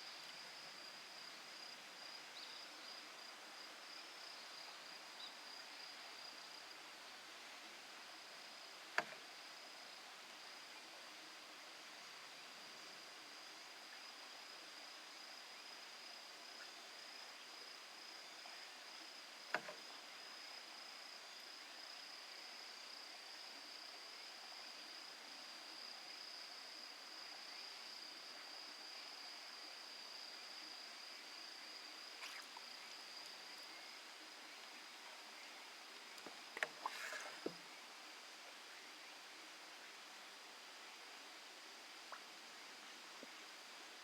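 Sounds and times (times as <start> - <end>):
insects trilling: 12.4 - 37.9.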